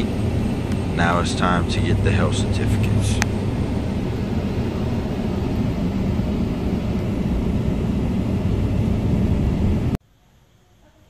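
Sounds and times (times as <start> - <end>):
vehicle road and engine rumble: 0.0 - 10.0.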